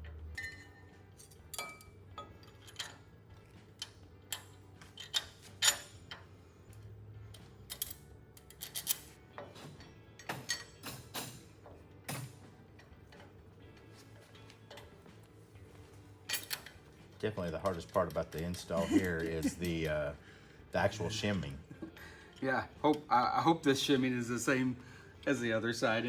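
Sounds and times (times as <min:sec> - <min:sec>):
metallic clicks of hardware and tools: 0:00.0 - 0:03.1, 0:03.8 - 0:13.9, 0:14.6 - 0:15.0, 0:16.3 - 0:20.0.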